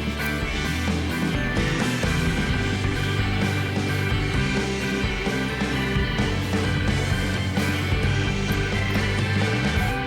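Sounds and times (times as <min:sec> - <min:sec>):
rock music with guitar: 0:00.0 - 0:10.0.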